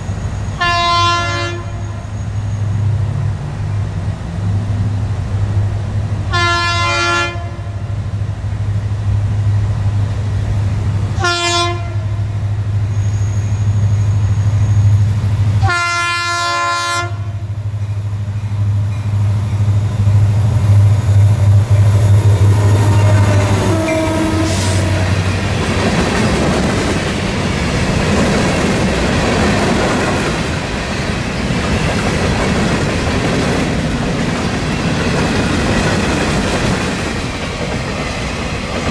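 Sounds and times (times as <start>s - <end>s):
diesel locomotive engine drone: 0.0s - 38.9s
locomotive horn blasts: 0.6s - 2.2s, 6.3s - 7.8s, 11.2s - 12.2s, 15.6s - 17.4s, 22.5s - 25.3s
train wheels clacking on rails: 17.8s - 38.9s.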